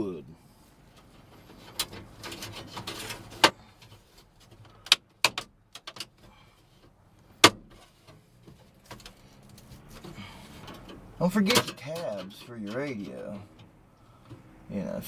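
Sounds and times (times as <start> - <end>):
scraping: 0.7 - 4.9, 6.1 - 14.5
sharp clicks and knocks: 1.0 - 14.6.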